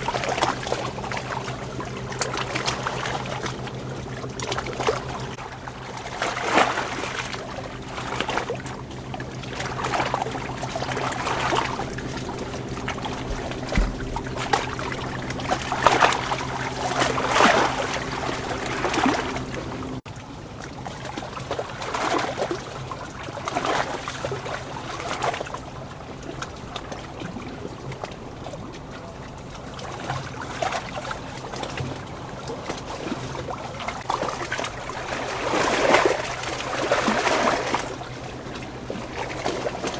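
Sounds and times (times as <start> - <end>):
running water splashing: 0.0 - 20.0
steady low hum: 0.0 - 20.0.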